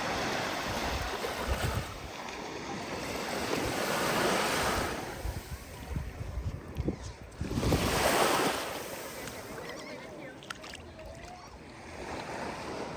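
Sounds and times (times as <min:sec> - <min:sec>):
wind buffeting microphone: 0:00.0 - 0:02.2, 0:03.2 - 0:09.6
ocean waves breaking on shore: 0:00.0 - 0:12.9.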